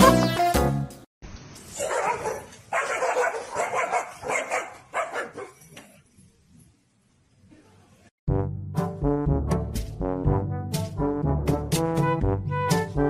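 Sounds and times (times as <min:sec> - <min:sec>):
music: 0:00.0 - 0:01.1, 0:08.3 - 0:13.0
dog barking: 0:01.8 - 0:05.6.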